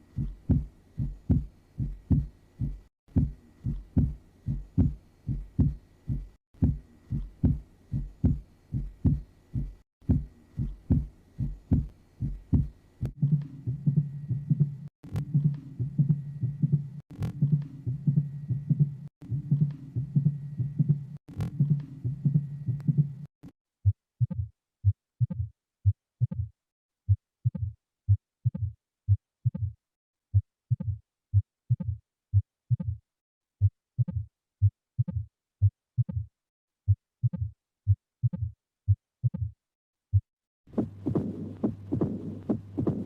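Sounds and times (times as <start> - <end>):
continuous low heart murmur: 0.0 - 26.5, 38.2 - 43.0
heartbeat thuds: 0.0 - 26.5, 38.2 - 43.0.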